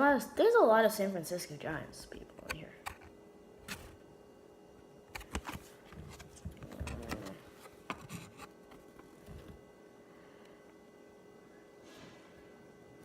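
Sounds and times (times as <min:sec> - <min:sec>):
trading cards shuffled and flipped: 0:05.1 - 0:09.5.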